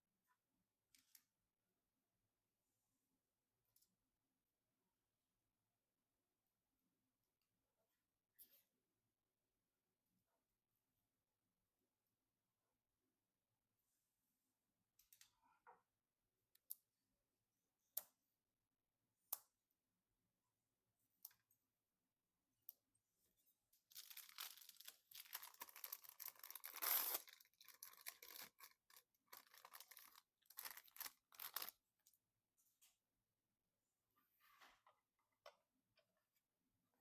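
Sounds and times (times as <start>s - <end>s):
packaging rustling and tearing: 23.9s - 31.8s.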